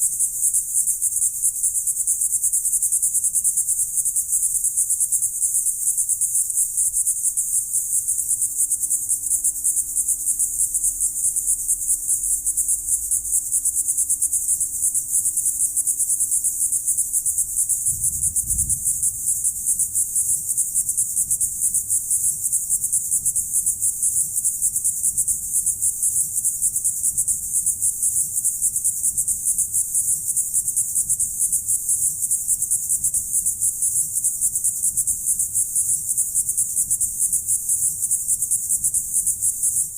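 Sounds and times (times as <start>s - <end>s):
crickets trilling: 0.0s - 39.9s.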